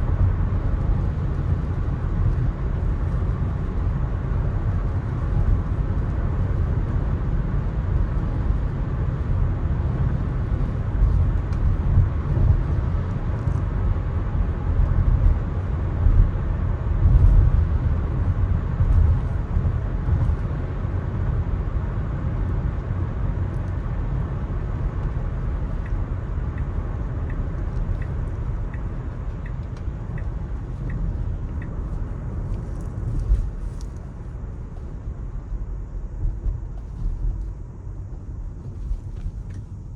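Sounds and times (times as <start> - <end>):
road and tyre rumble: 0.0 - 39.9
faint regular ticking: 25.6 - 32.9.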